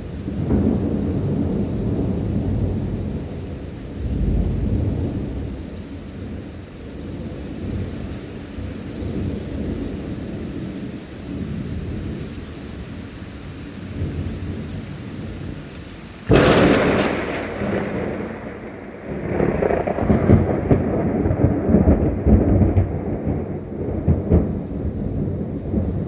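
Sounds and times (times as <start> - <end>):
rolling thunder rumbles: 0.0 - 12.4, 13.8 - 26.0
rain hissing: 0.0 - 26.0
thunder crack: 0.4 - 3.4, 16.3 - 26.0.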